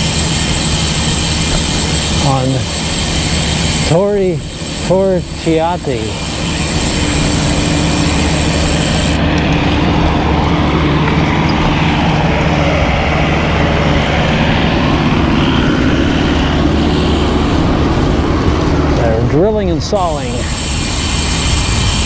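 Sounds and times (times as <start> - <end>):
steady low hum: 0.0 - 22.0
wind rushing over microphone: 0.0 - 22.0.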